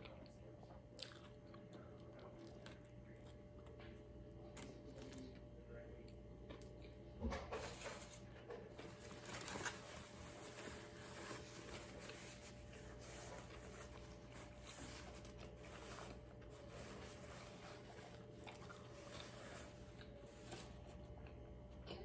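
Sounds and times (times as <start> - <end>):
paper wrapping rustling: 7.6 - 21.0.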